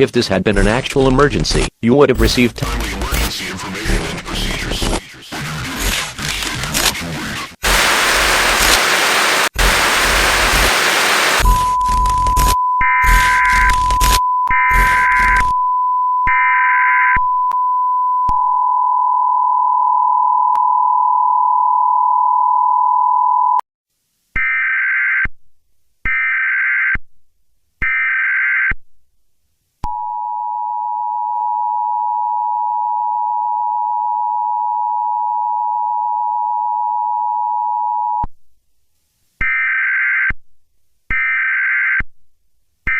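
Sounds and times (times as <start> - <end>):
burst of static: 5.6 - 15.4
screeching digital header bursts: 7.6 - 11.6.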